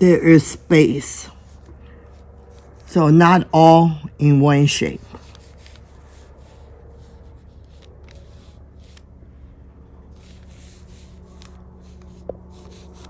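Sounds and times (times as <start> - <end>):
brush stroking paper: 0.0 - 3.7, 4.8 - 9.1, 10.1 - 13.0
steady low hum: 0.0 - 13.0.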